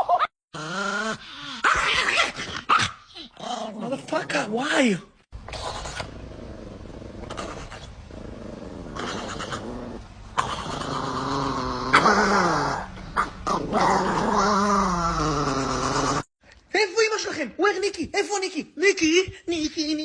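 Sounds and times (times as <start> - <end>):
dog growling: 5.5 - 16.3.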